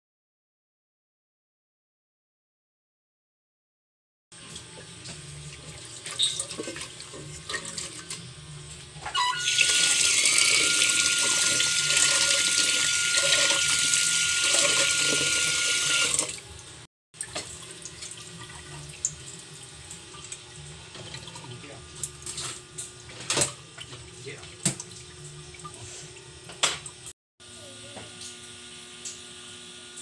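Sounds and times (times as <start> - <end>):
thin faucet whistle: 6.2 - 6.4, 9.1 - 12.1
tap water running into sink: 9.3 - 16.4, 17.2 - 22.2.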